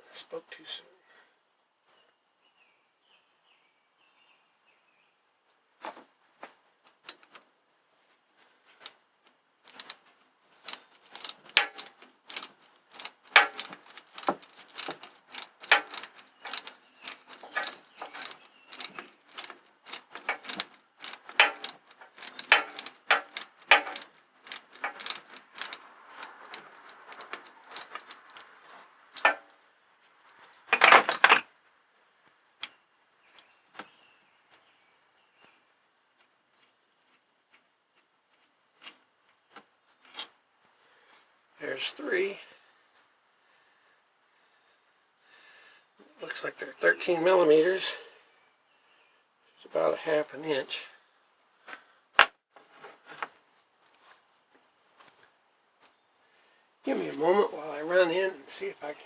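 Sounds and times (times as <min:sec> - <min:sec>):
wrench clicking on metal: 0:09.7 - 0:10.0, 0:10.6 - 0:28.5, 0:29.2 - 0:29.5, 0:30.8 - 0:31.4
metallic clatter: 0:10.6 - 0:28.5, 0:29.1 - 0:29.5, 0:30.7 - 0:31.4.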